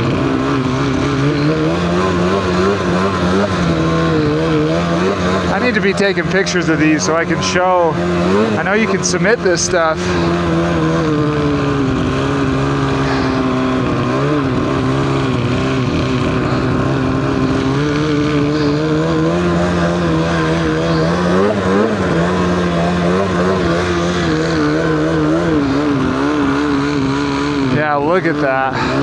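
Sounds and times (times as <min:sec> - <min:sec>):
snowmobile engine running: 0:00.0 - 0:29.0.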